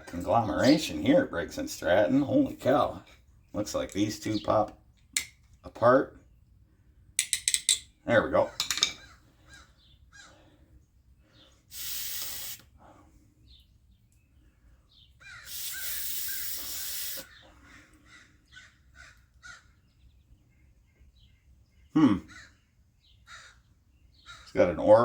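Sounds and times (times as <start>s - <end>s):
faint caw-like calls: 9.0s - 10.7s, 15.2s - 16.0s, 17.3s - 19.9s, 22.2s - 24.6s
pressurised air hissing: 11.7s - 12.8s, 15.4s - 17.4s.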